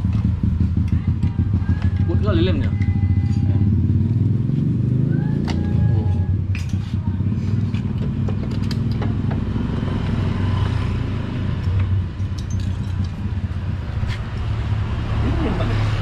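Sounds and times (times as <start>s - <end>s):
motorcycle engine idling: 0.0s - 9.7s.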